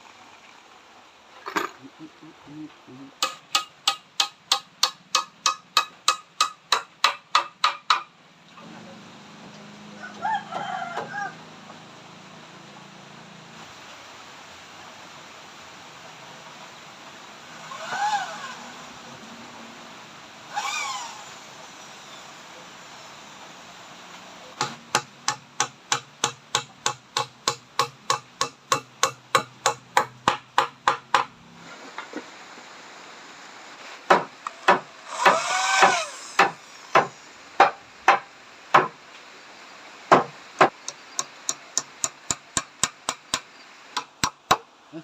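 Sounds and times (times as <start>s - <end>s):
hammer striking nails into wood: 3.2s - 8.1s, 24.6s - 31.3s, 34.1s - 39.0s, 40.1s - 44.6s.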